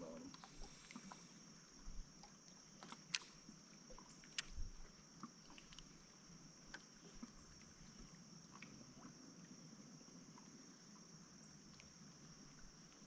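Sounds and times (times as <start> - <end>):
steady high-pitched hiss: 0.0 - 13.0
fishing gear clicking and knocking: 2.8 - 3.4, 4.2 - 4.9.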